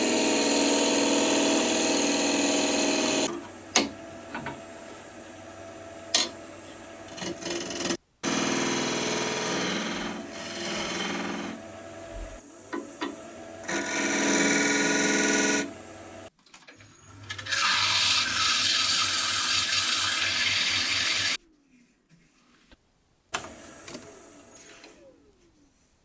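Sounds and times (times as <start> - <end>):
lathe motor whine: 0.0 - 3.3, 10.4 - 16.3
lathe tool cutting wood: 0.0 - 3.3, 8.2 - 11.7, 13.1 - 16.2.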